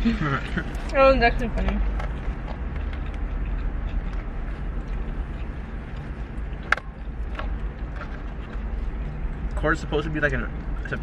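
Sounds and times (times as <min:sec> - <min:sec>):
car cabin rumble: 0:00.0 - 0:11.0.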